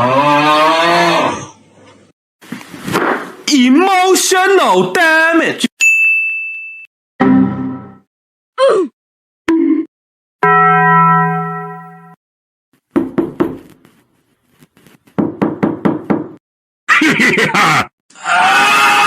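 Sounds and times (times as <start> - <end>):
rapid knocking: 12.9 - 14.0.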